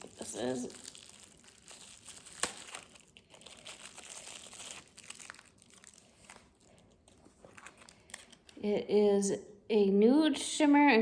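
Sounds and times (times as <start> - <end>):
packaging bag crinkling: 0.0 - 8.6.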